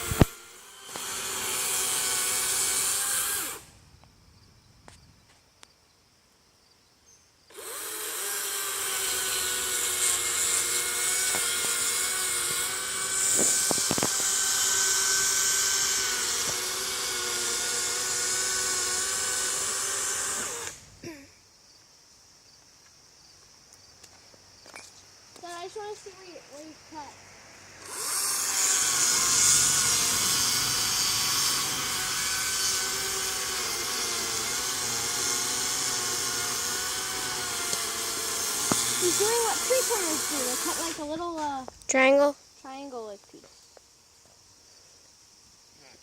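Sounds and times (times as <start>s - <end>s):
electric chainsaw motor whine: 0.0s - 3.7s, 7.5s - 21.0s, 27.7s - 41.5s
chain cutting wood hiss: 7.6s - 21.0s, 27.8s - 44.4s.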